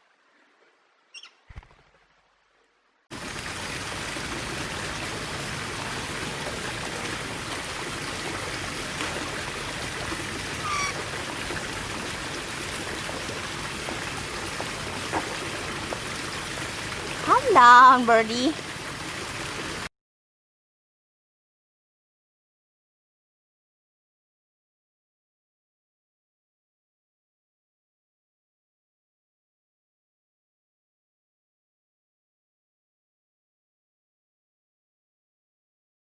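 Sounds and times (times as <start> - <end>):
faint bird chirps: 1.1 - 1.4, 10.6 - 11.0.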